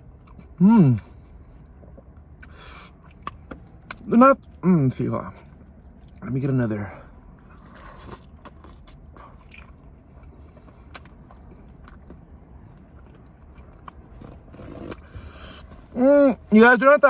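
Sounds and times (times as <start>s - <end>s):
person chewing food: 0.0s - 4.6s, 7.3s - 16.0s.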